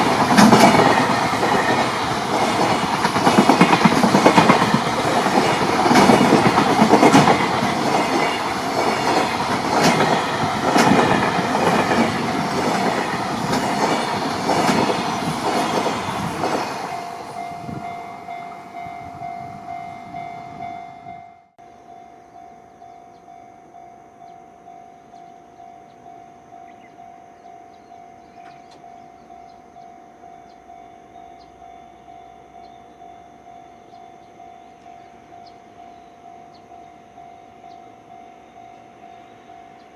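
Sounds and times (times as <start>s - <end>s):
train wheels clattering over joints: 0.0s - 16.9s
level-crossing warning bell: 0.0s - 39.9s.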